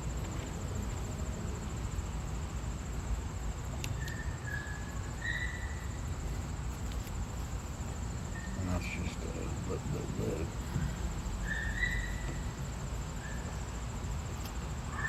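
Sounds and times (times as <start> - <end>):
crickets trilling: 0.0 - 15.0.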